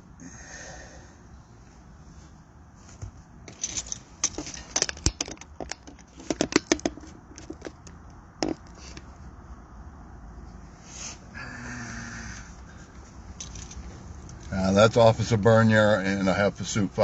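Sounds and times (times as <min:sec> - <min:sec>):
close rustling and crackling clicks: 0:02.8 - 0:09.2.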